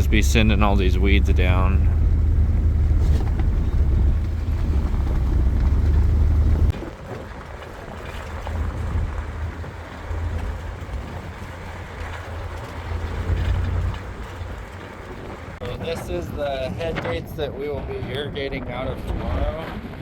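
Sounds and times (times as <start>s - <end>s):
vehicle rumble: 0.0s - 16.8s
wind buffeting microphone: 0.0s - 20.0s.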